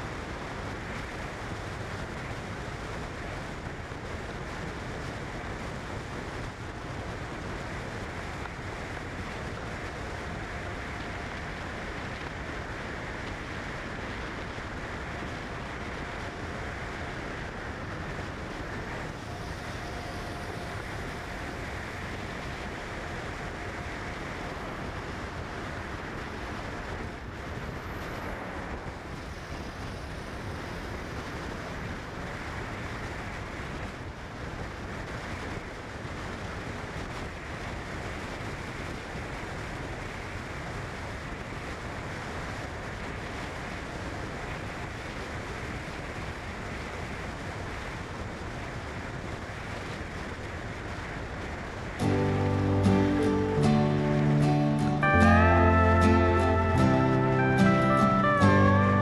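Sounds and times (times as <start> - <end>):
steady rushing noise: 0.0 - 59.0
faint thin tone: 19.0 - 25.2, 52.0 - 59.0.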